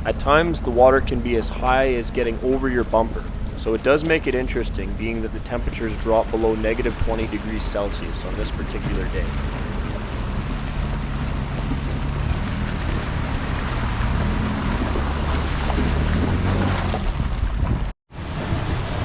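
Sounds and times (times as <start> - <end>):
truck engine running: 0.0 - 19.0.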